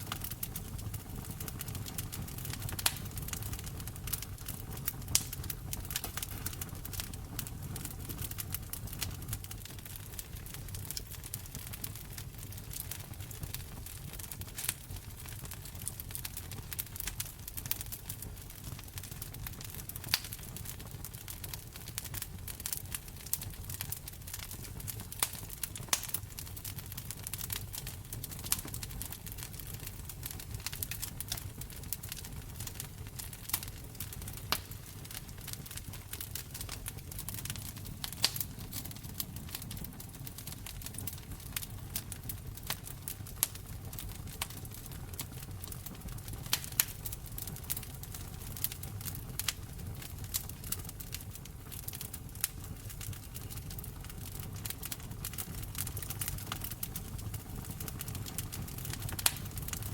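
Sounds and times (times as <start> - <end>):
fire pops and snaps: 0.0 - 59.9
low rumble of burning fire: 0.0 - 59.9.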